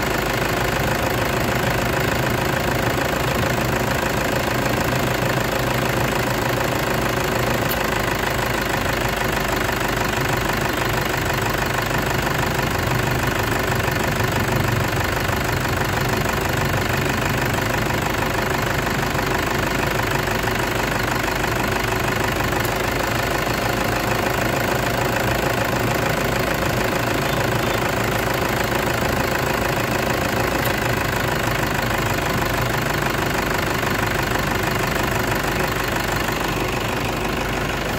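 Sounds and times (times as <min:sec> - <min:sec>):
engine idling: 0:00.0 - 0:37.9.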